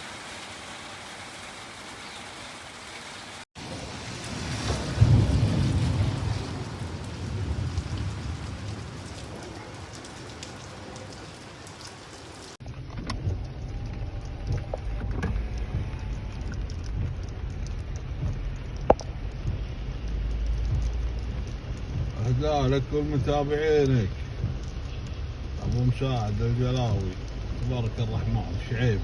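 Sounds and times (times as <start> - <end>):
steady rain falling: 0.0 - 29.0
strong low rumble: 12.6 - 29.0.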